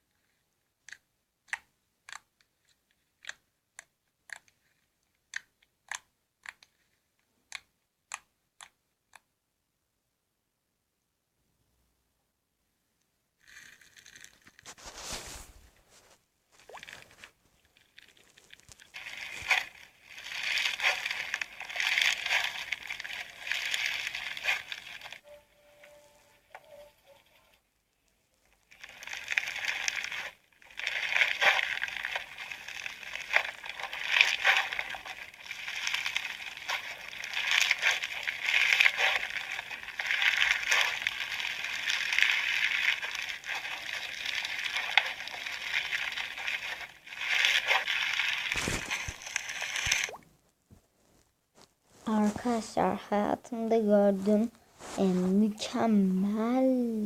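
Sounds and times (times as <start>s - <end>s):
crunchy slime crackling and popping: 16.6s - 25.3s, 28.1s - 50.2s.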